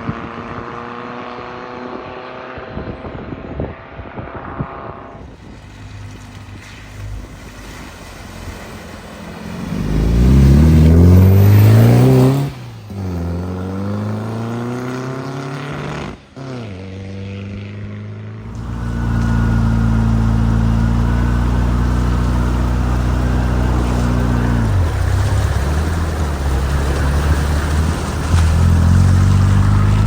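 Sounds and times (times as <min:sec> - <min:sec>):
car engines accelerating: 0:04.6 - 0:30.0
steady engine note: 0:09.4 - 0:13.8, 0:18.4 - 0:30.0.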